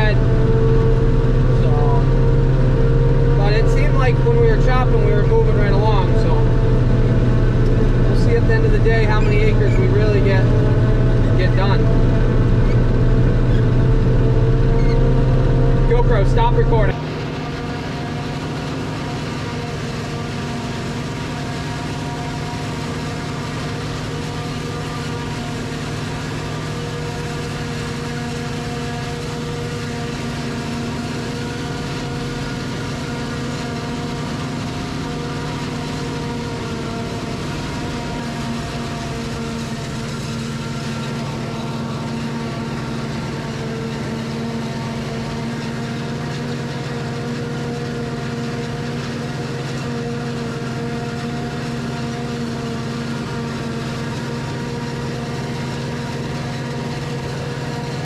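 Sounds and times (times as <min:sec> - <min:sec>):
diesel farm machinery droning: 0:00.0 - 0:58.0.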